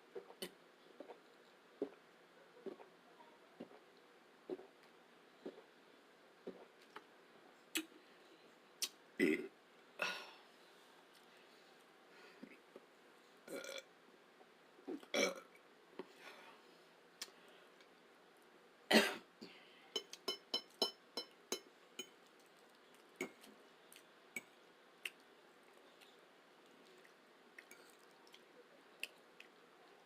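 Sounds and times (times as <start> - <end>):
mouth clicks and smacks: 7.7 - 8.0, 22.8 - 25.3
person burping: 9.2 - 10.3, 13.5 - 13.8, 15.1 - 15.5.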